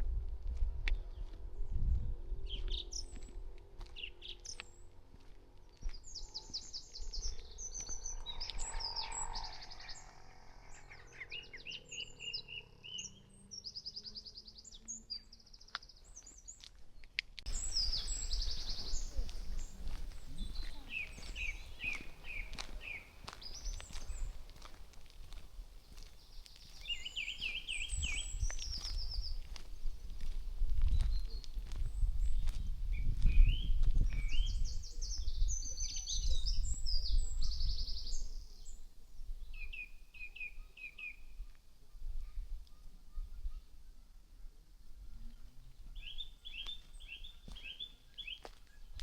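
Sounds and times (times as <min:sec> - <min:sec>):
low rumble: 0:00.0 - 0:04.0, 0:04.7 - 0:12.6, 0:17.5 - 0:25.7
songbirds singing: 0:00.9 - 0:44.1, 0:44.8 - 0:49.0.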